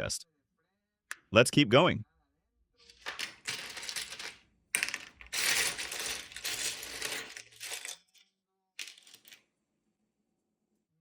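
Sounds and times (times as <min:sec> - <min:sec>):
plastic bricks clattering: 0:02.9 - 0:08.2, 0:08.8 - 0:09.4.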